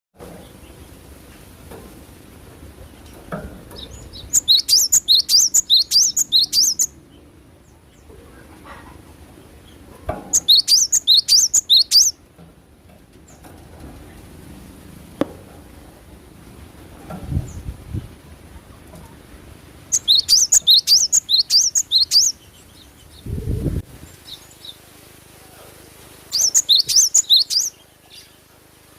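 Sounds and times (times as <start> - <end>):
bird chirping high notes: 4.0 - 7.0, 10.3 - 12.2, 19.9 - 22.4, 26.3 - 27.8.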